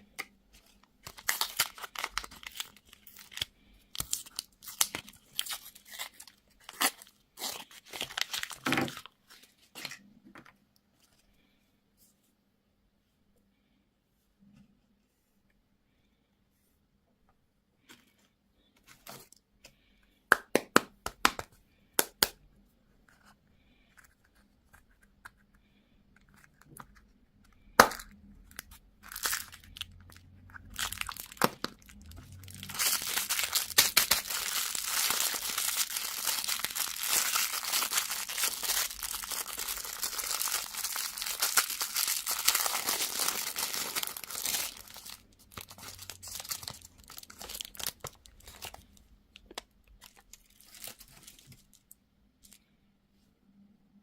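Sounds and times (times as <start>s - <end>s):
plastic wrapper crinkling: 0.6s - 10.0s, 27.8s - 52.6s.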